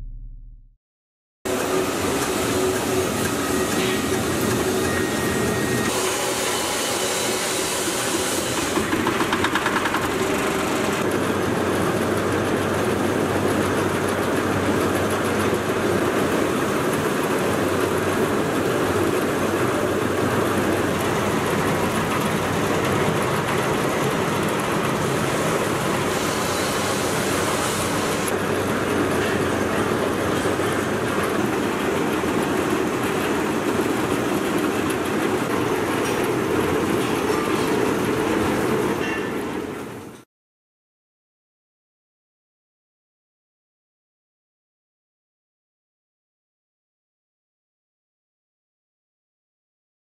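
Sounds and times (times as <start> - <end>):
sifting machine drone and rattle: 1.5 - 40.2.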